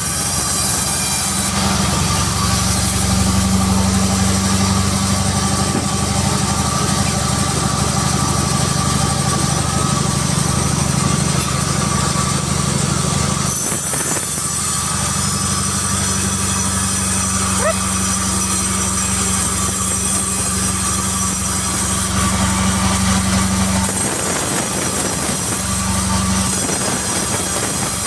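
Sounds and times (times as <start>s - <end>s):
sawmill machinery hum: 0.0s - 28.0s.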